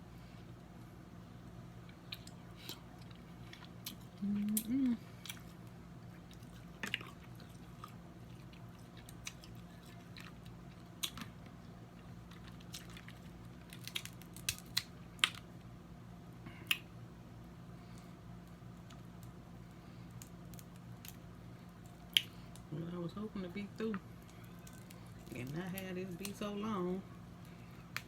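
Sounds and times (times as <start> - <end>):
steady low hum: 0.0 - 28.0
chewing: 1.9 - 14.1
crab shells cracking: 12.2 - 15.5, 20.1 - 22.7, 24.2 - 26.4.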